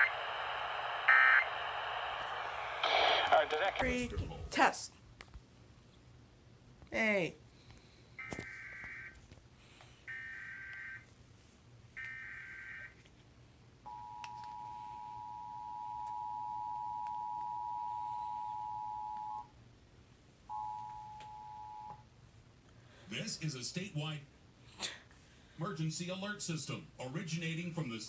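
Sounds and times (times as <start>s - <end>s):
raspy warbling data bursts: 1.1s - 1.5s.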